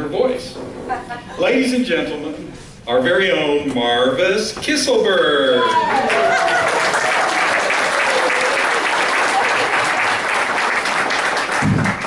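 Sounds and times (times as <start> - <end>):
low thump: 0.6 - 1.2
audience applauding: 5.6 - 12.0.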